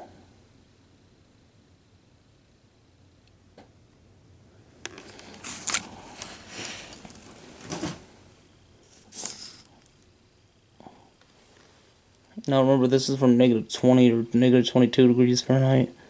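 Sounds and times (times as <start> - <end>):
rustling of handling: 4.8 - 10.1.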